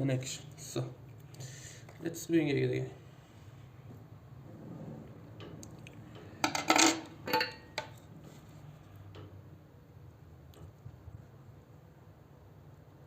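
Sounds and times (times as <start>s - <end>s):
metal tools clinking: 6.4s - 8.0s.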